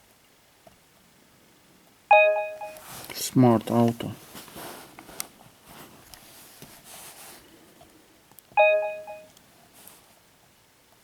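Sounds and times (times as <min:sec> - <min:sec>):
camcorder electronic chime: 0:02.1 - 0:02.8, 0:08.6 - 0:09.3.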